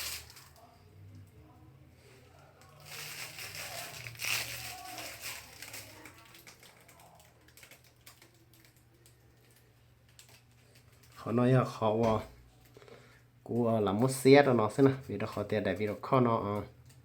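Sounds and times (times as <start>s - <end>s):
objects rustling and clicking: 0.0s - 0.7s, 2.6s - 11.2s.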